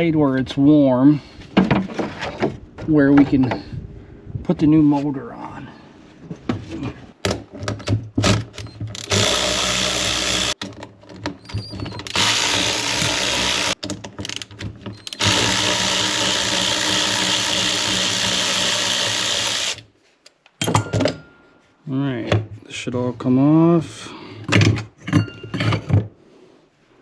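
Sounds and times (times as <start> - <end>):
power drill running: 9.0 - 10.6, 12.1 - 13.8, 15.1 - 19.8.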